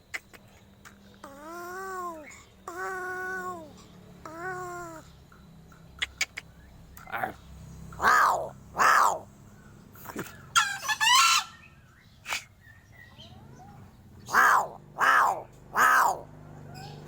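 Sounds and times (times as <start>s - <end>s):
crow cawing: 8.0s - 9.2s, 14.3s - 16.2s
crow warbling call: 8.0s - 9.3s, 14.3s - 16.3s.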